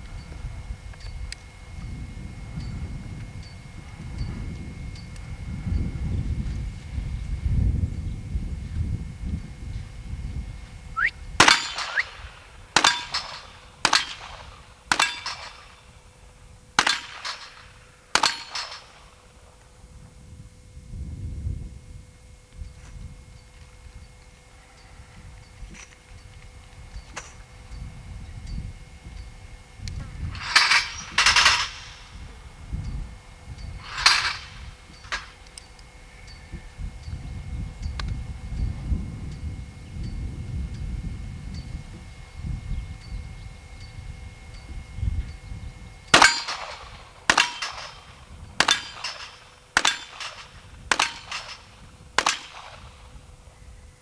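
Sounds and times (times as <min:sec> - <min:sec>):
revolver shots with ringing: 0:11.4 - 0:16.0, 0:16.8 - 0:19.3, 0:46.2 - 0:53.1.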